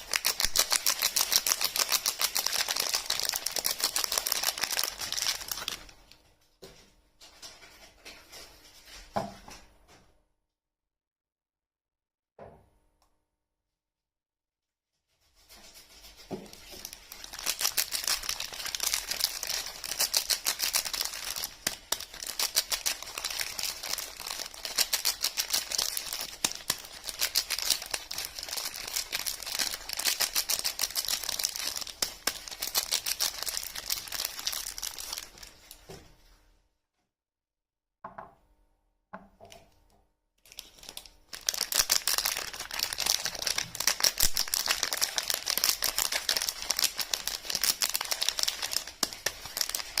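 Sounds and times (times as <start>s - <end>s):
wrapper crinkling and tearing: 0.0s - 6.2s, 15.5s - 35.9s, 40.4s - 50.0s.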